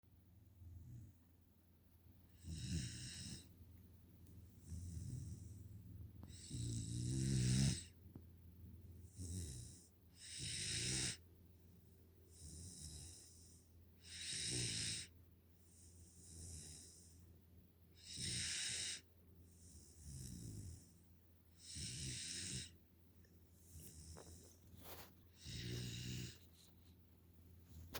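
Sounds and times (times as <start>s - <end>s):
puppy snoring: 2.3s - 3.6s, 4.6s - 8.0s, 9.0s - 11.3s, 12.3s - 17.2s, 17.9s - 22.8s, 23.6s - 26.7s.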